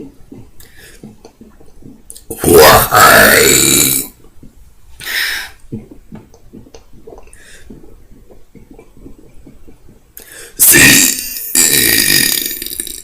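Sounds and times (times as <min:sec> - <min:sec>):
person burping: 0:02.4 - 0:04.2, 0:10.8 - 0:13.0.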